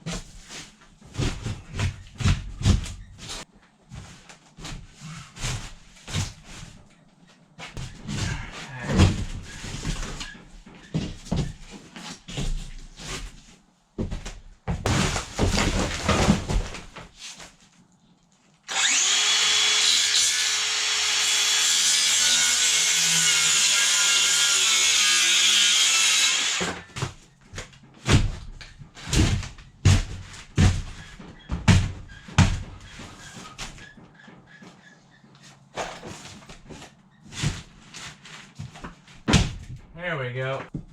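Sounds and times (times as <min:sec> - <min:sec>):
knocks and clatter of boards: 0:14.1 - 0:17.1, 0:26.6 - 0:34.8
power tool running: 0:18.7 - 0:26.8.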